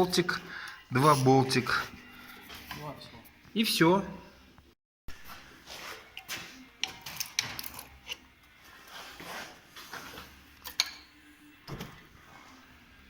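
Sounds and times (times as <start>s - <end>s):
hand tools clicking and scraping: 5.8s - 8.4s.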